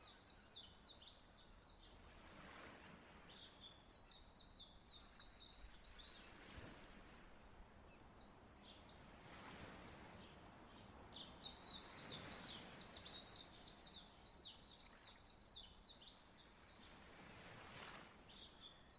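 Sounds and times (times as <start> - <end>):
faint bird song: 0.0 - 18.9
soft waves: 0.0 - 18.9.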